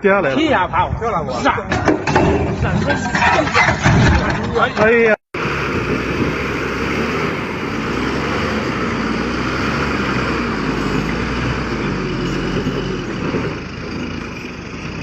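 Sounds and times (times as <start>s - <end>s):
road noise: 0.0s - 15.0s
heavy truck engine running: 5.4s - 15.0s.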